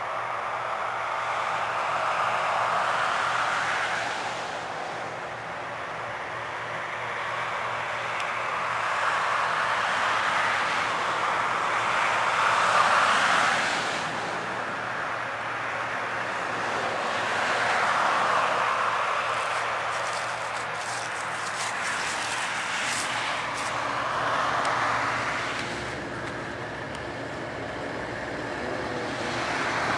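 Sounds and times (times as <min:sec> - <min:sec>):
combine harvester running: 0:14.0 - 0:29.9.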